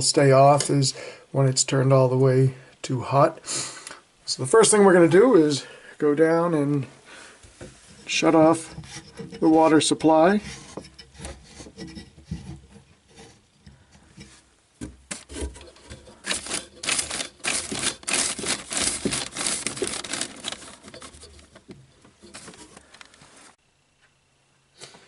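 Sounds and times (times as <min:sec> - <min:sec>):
hands rustling and knocking: 0:10.6 - 0:23.4.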